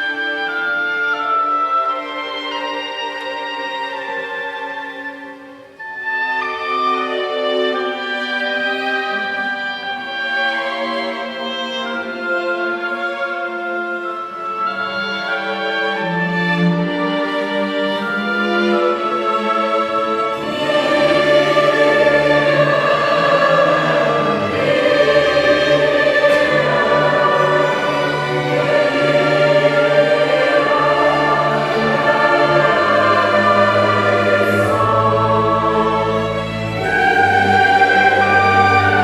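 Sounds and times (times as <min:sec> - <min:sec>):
chamber orchestra: 0:00.0 - 0:39.0
mixed choir singing: 0:17.3 - 0:39.0.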